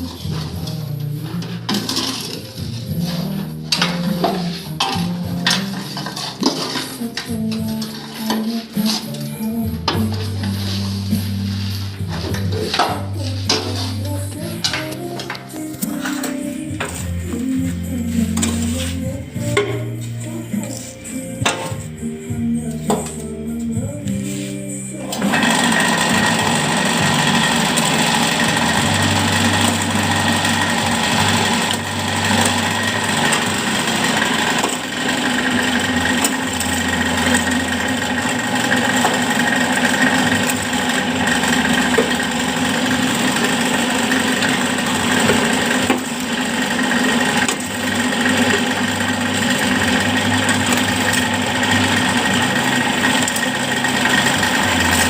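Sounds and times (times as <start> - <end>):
block press machine running: 0.0 - 55.0.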